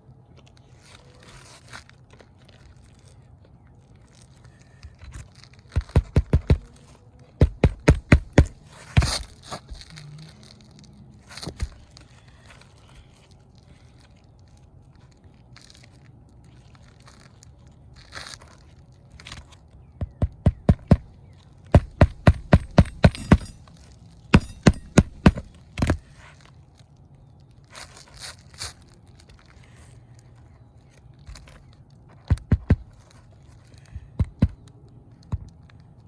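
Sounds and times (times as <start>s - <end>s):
shingle rustling: 0.6s - 17.3s, 20.6s - 26.6s
hammer tapping roofing nails: 5.8s - 6.8s, 7.4s - 9.3s, 20.0s - 21.1s, 21.7s - 23.6s, 24.3s - 26.0s.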